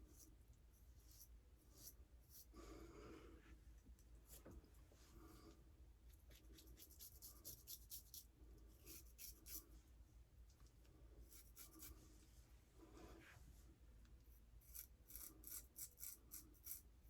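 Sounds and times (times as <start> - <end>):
straight razor scraping stubble: 14.6 - 16.9.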